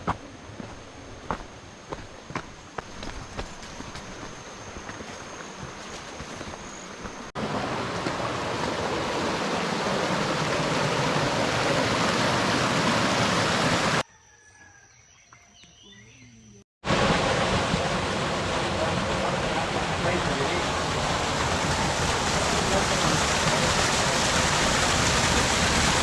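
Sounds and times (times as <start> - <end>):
waterfall rushing: 7.4 - 14.0, 16.8 - 26.0
bird chirps: 14.3 - 16.6.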